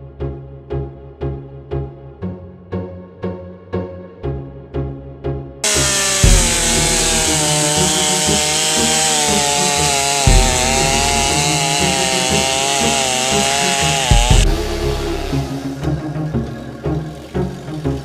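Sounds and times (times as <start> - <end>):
background music with steady beat: 0.0 - 18.0
chainsaw cutting wood: 5.6 - 15.6.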